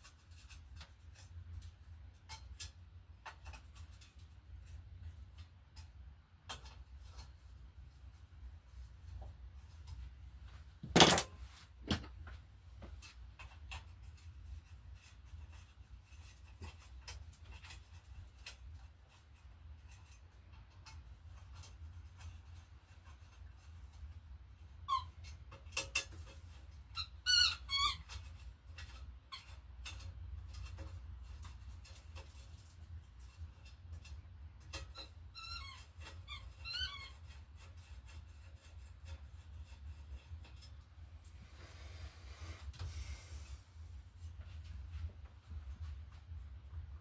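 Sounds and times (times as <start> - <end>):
short squeaks of bike part: 24.8 - 25.4, 26.9 - 28.3, 35.0 - 37.8.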